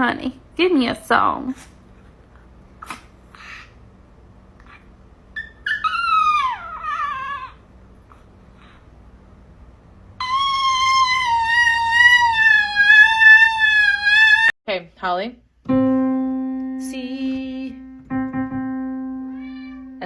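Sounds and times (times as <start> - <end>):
dog howling: 5.4 - 7.6, 10.2 - 14.6.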